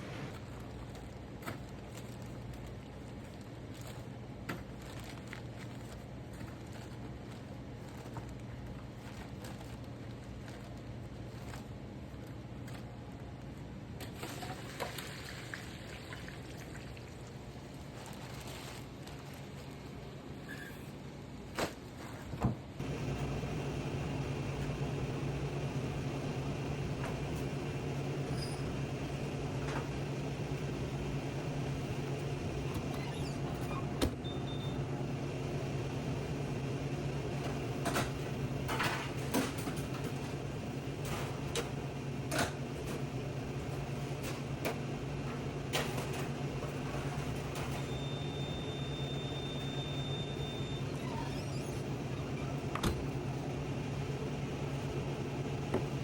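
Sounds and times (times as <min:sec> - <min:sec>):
kitchen equipment humming: 0:22.8 - 0:56.0.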